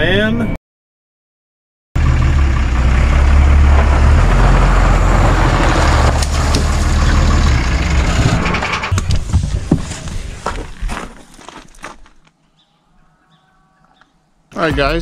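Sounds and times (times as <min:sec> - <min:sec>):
combine engine and machinery running: 0:02.0 - 0:10.0
machinery knocks and rattles: 0:05.4 - 0:10.0.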